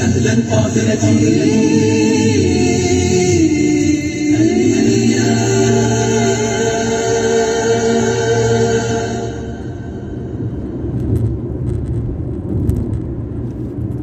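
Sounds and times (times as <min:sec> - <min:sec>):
choir singing a cappella: 0:00.0 - 0:10.6.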